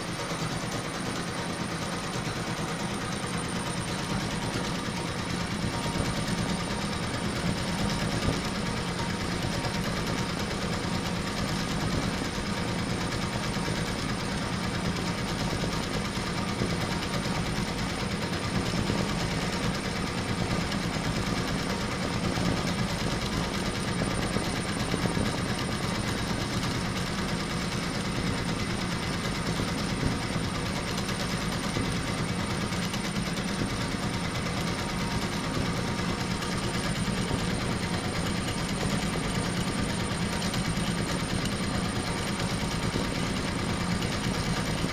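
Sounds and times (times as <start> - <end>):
embroidery machine needle chatter: 18.7 - 44.8.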